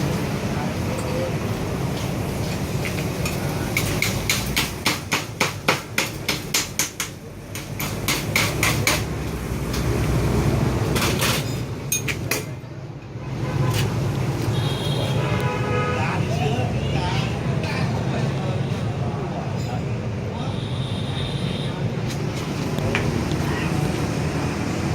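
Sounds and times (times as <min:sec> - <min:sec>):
hammer striking metal: 0:03.8 - 0:09.1.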